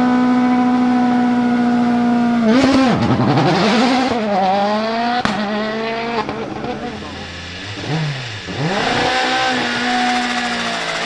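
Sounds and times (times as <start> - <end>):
rally car engine revving: 0.0 - 11.0
sharp crack: 2.5 - 7.1.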